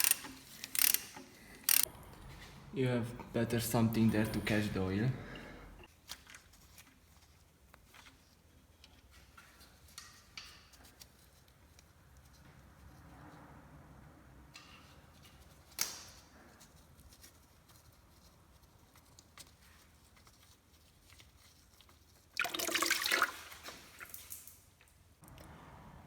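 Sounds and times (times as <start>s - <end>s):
oil gushing into a pan: 22.4s - 24.2s.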